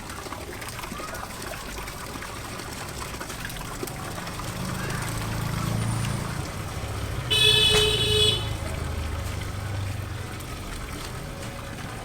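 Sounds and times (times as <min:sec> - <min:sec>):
horn blast: 0:07.2 - 0:08.6.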